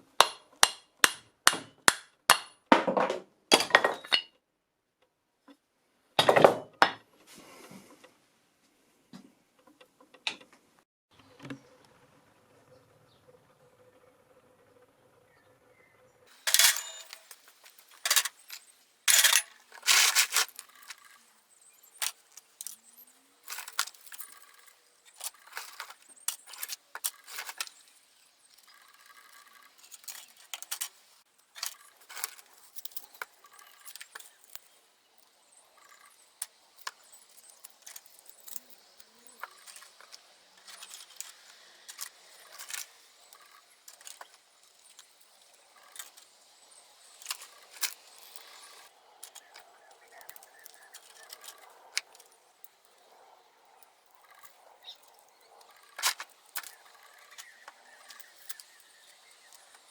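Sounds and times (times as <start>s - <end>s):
small metal parts clinking: 16.3s - 59.9s.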